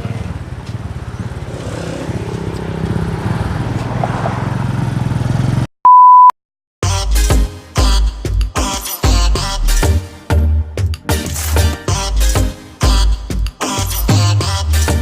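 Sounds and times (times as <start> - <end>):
motorcycle engine rumbling: 0.0 - 5.7
high beep: 5.8 - 6.4
music: 6.8 - 15.0.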